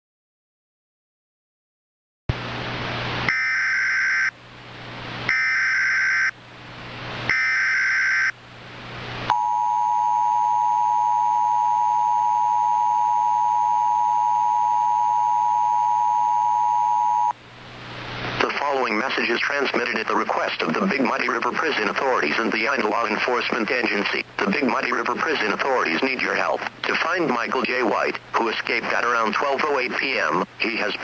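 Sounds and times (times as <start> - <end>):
steady two-tone alert signal: 7.3 - 8.3, 9.3 - 17.4
static hiss: 17.4 - 31.0.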